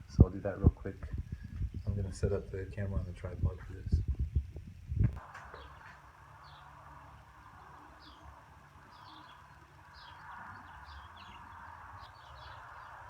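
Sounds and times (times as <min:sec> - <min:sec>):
small birds chirping: 0:00.2 - 0:13.0.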